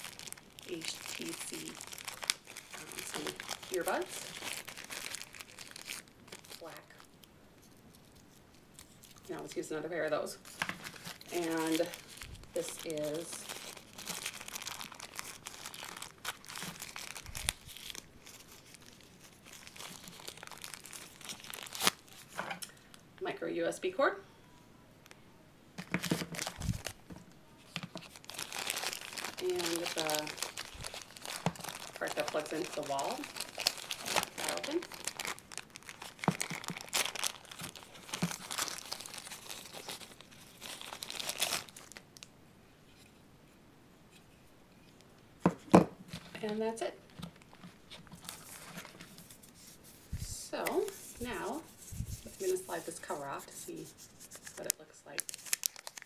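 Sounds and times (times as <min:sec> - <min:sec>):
plastic packaging crinkling: 0:00.0 - 0:09.4, 0:10.4 - 0:23.0, 0:25.8 - 0:42.3, 0:46.1 - 0:56.0.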